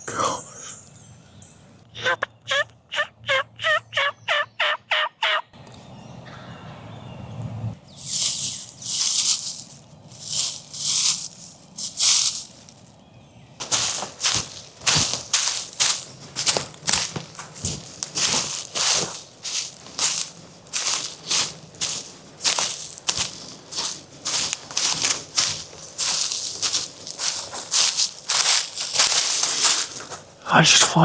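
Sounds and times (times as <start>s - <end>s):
turkey yelping: 1.9s - 5.5s
rustling in dry vegetation: 7.7s - 31.0s.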